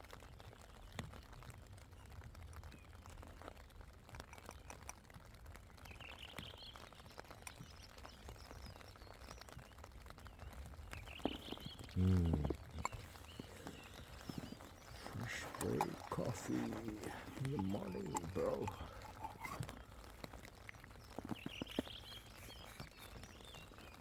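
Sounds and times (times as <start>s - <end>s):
light taps and ticks: 0.9s - 24.0s
faint bird chirps: 5.8s - 24.0s.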